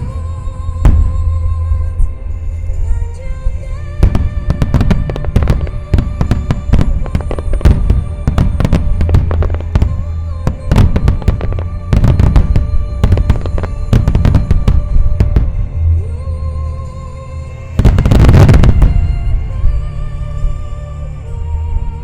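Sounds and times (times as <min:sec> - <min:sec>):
fireworks bursting with deep booms: 0:00.0 - 0:02.5, 0:04.0 - 0:16.0, 0:17.7 - 0:19.8
music: 0:00.0 - 0:22.0.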